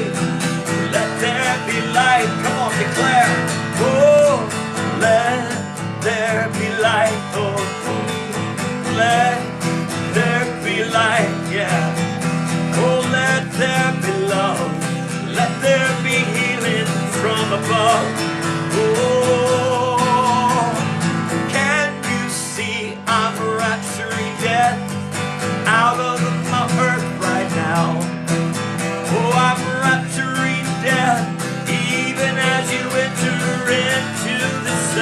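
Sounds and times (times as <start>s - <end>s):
person singing: 0.0s - 28.2s, 29.0s - 35.0s
acoustic guitar: 0.0s - 35.0s.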